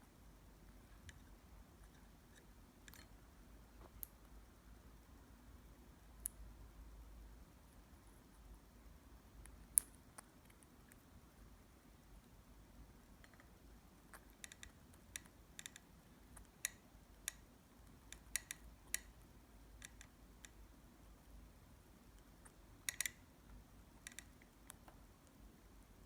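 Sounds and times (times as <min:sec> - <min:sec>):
bird beak pecking and nibbling: 0:09.4 - 0:11.1, 0:13.2 - 0:19.2, 0:22.2 - 0:23.2, 0:24.0 - 0:25.4.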